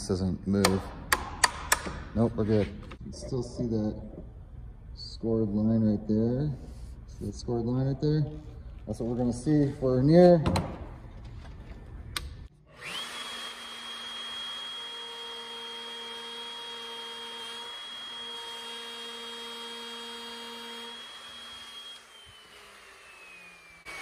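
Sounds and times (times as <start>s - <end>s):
wood router motor whining: 12.7s - 24.0s.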